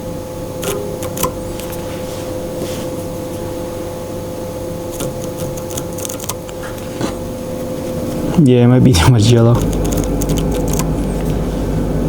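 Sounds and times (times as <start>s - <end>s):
mechanical hum: 0.0s - 12.0s
faint handling clicks: 0.6s - 1.9s, 4.9s - 7.2s, 9.5s - 11.5s.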